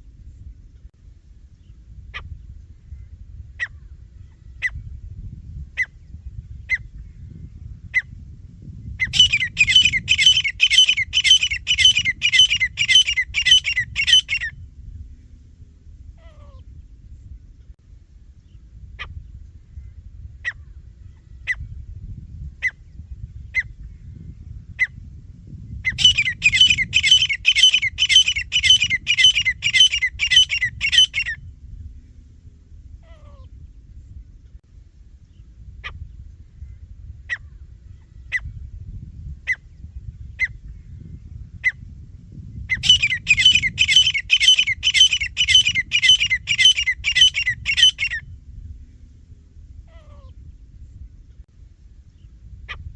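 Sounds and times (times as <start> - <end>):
francolin calling: 9.0 - 14.5, 25.9 - 31.4, 42.7 - 48.2.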